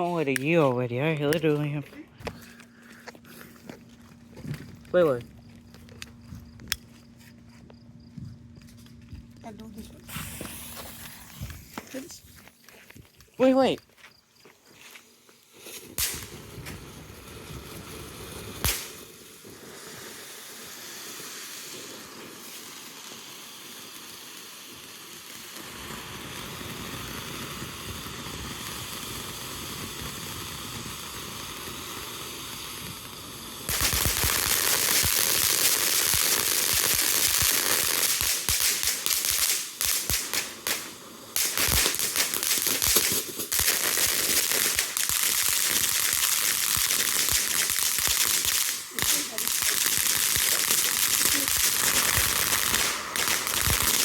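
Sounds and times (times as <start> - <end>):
crackling firework spray: 0.0 - 3.6, 9.5 - 12.6, 15.0 - 54.0
firework spraying hiss: 9.8 - 12.4, 15.4 - 54.0
firework pops: 10.0 - 12.2, 15.6 - 17.2, 18.3 - 19.2, 31.7 - 54.0.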